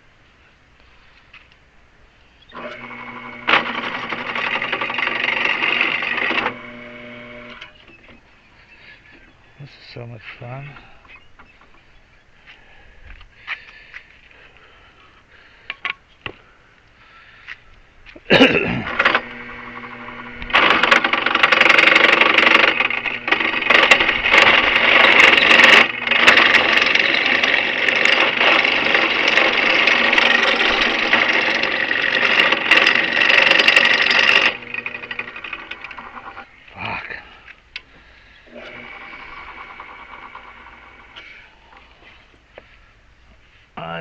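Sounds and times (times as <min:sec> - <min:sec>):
electric drill boring: 0:02.5 - 0:07.9, 0:18.8 - 0:36.6, 0:38.5 - 0:41.2.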